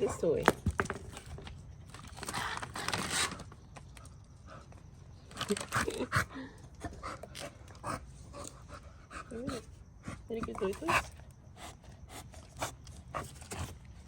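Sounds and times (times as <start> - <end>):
dogs panting: 5.8 - 13.9.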